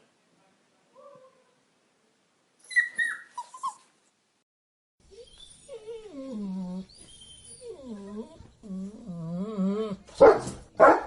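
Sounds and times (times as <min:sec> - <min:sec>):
puppy crying and whimpering: 0:02.6 - 0:03.9, 0:05.1 - 0:10.1.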